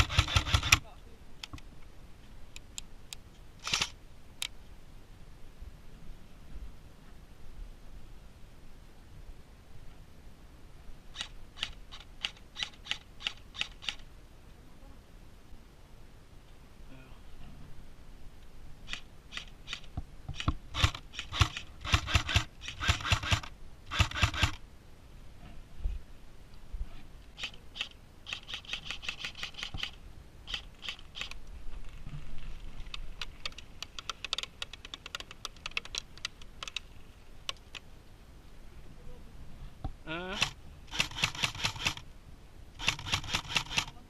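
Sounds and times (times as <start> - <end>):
airsoft guns firing in bursts: 0.0 - 0.9, 18.9 - 24.6, 40.4 - 42.0.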